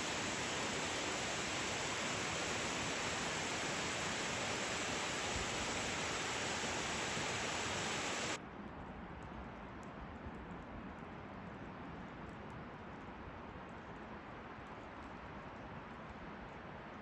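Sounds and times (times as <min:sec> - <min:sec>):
waterfall rushing: 0:00.0 - 0:08.4.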